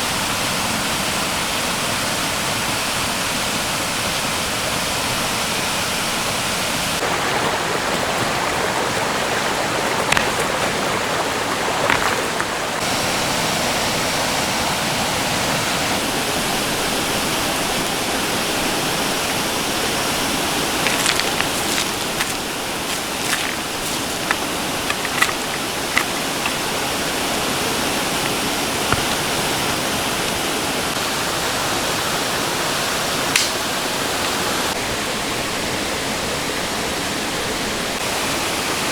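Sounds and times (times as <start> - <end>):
creek water flowing: 0.0 - 38.9
light clicks and knocks: 20.9 - 26.8.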